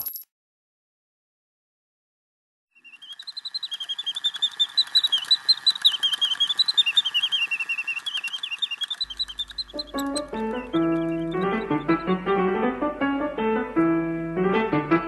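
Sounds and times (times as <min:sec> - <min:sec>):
mechanical bird warbling song: 0:02.8 - 0:12.2.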